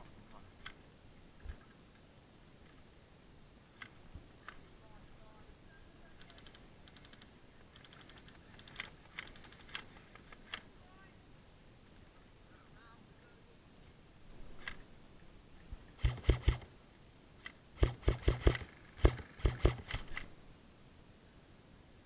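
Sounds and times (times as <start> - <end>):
airsoft gun shots: 16.0 - 16.7, 17.8 - 20.3.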